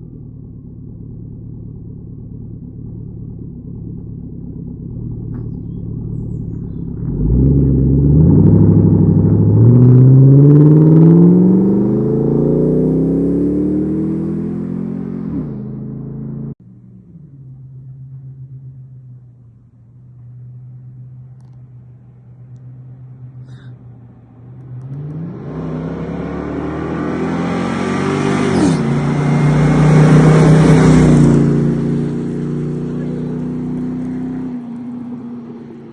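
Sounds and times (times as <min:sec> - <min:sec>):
engine exhaust idling and revving: 0:00.0 - 0:35.9.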